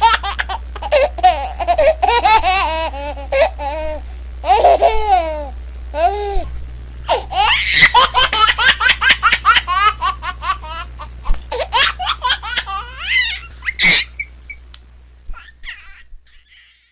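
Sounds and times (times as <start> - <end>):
baby laughing: 0.0 - 6.5, 7.1 - 14.3, 15.3 - 16.9
baby squealing: 7.1 - 8.1, 11.5 - 14.6, 15.3 - 16.9.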